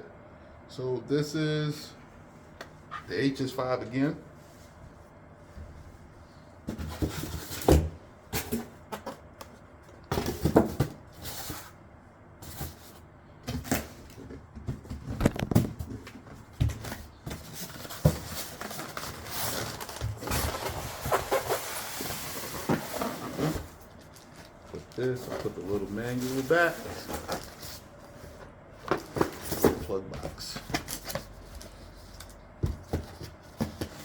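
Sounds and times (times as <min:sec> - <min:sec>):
knocks and thumps of packaging: 0:10.1 - 0:11.0, 0:13.4 - 0:23.8, 0:28.8 - 0:31.3, 0:32.6 - 0:34.0
rustling of cardboard: 0:12.4 - 0:34.0.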